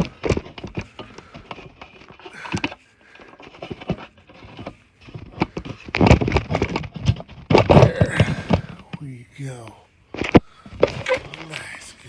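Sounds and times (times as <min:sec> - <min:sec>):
handling knocks and clicks: 0:00.0 - 0:09.1.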